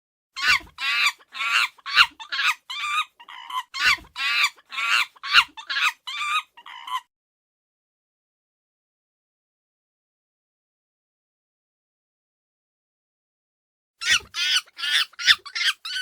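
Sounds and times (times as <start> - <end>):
chimpanzee high-pitched calls: 0.4 - 7.1, 14.0 - 16.0.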